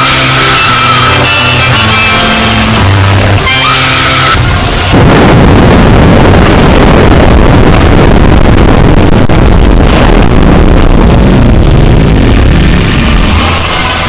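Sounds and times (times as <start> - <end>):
loud distorted rumbling noise: 0.0 - 14.0.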